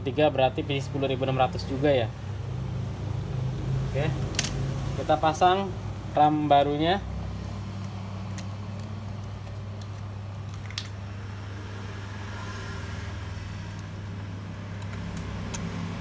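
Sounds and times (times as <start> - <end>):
low background hum: 0.0 - 12.5.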